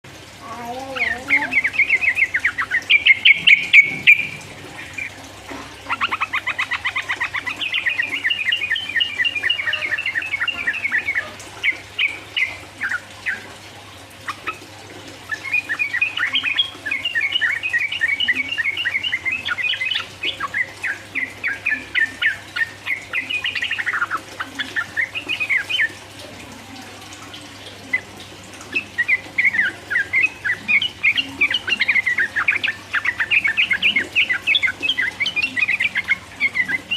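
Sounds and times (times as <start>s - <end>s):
bird singing rapid chattering song: 0.5s - 5.2s, 5.9s - 13.4s, 15.3s - 26.0s, 28.7s - 36.9s.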